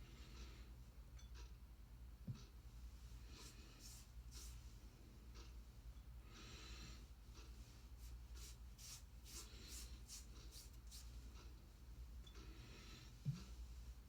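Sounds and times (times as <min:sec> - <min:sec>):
low steady hum: 0:00.0 - 0:14.0
fingertips rubbing oil on skin: 0:08.4 - 0:11.1.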